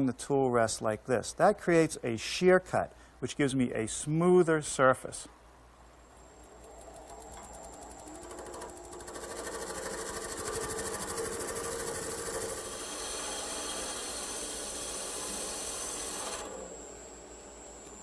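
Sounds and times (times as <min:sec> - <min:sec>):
wood lathe running: 0:06.7 - 0:18.0
chisel cutting wood hissing: 0:12.5 - 0:16.5.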